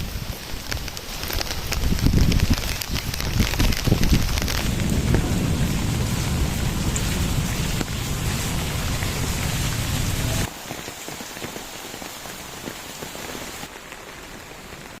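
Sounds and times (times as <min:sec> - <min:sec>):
heavy rain hissing: 0:00.1 - 0:15.0
heavy low rumble: 0:03.9 - 0:10.5.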